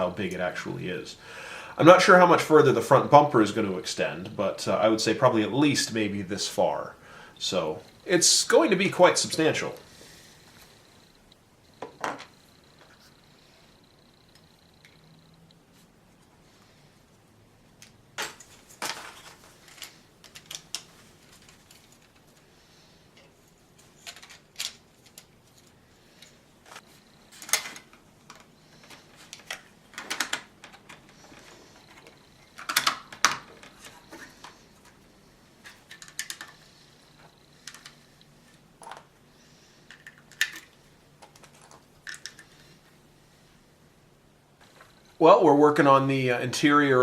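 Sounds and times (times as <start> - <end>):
plastic bricks clicking: 35.7 - 36.6, 39.9 - 42.6.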